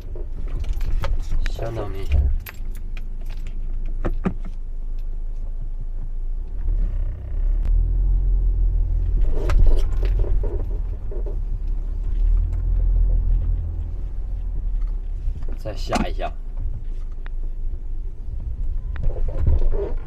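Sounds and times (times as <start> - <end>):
car suspension creaking and squealing: 0.0 - 5.0, 6.0 - 20.0
low road rumble: 0.0 - 20.0
keys jangling: 0.5 - 4.0.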